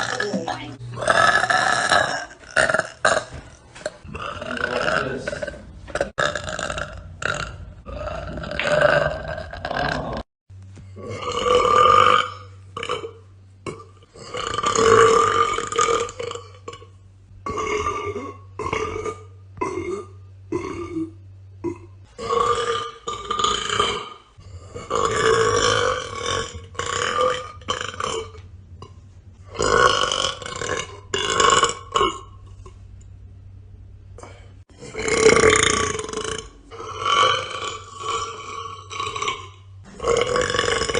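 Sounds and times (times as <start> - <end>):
woman burping: 0.0 - 10.2, 17.5 - 24.2.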